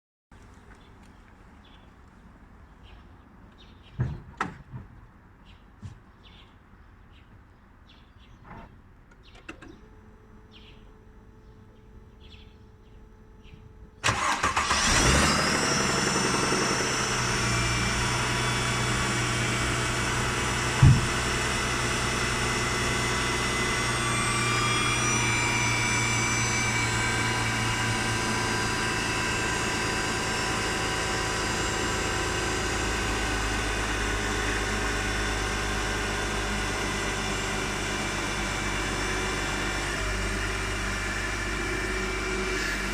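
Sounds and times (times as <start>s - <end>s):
engine idling: 9.3s - 42.9s
engine cranking and starting: 14.0s - 42.9s
sharp thump: 20.8s - 21.2s.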